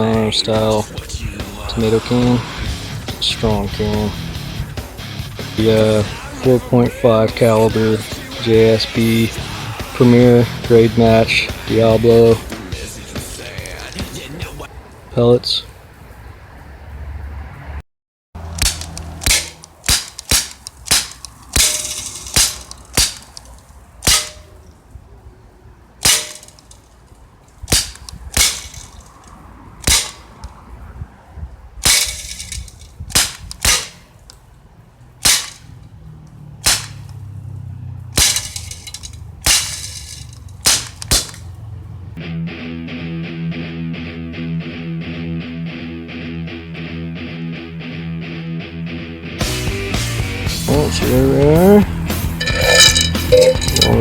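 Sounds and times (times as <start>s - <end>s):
guitar music: 2.7s - 6.0s, 42.2s - 54.0s
pellets striking steel can: 18.6s - 23.4s, 31.9s - 34.0s, 38.2s - 41.4s, 52.4s - 54.0s
air pistol firing pops: 33.1s - 34.0s, 36.6s - 37.2s.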